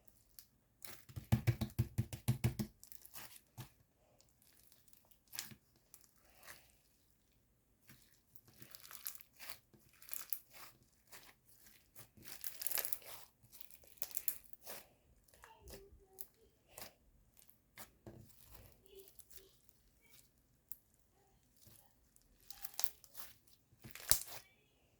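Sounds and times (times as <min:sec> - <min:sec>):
crunchy slime crackling: 0:07.8 - 0:24.5.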